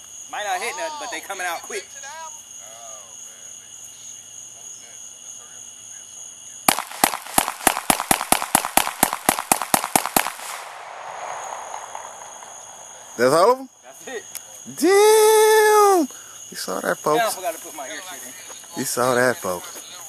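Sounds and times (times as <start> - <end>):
crickets trilling: 0.0 - 20.0
pistol shots in rapid succession: 6.7 - 13.1.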